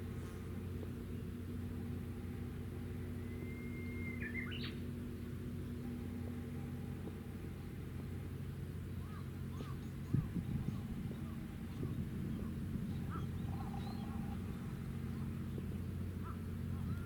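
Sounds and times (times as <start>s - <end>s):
ship engines humming: 0.0s - 17.0s
bird whistling call: 3.2s - 4.8s.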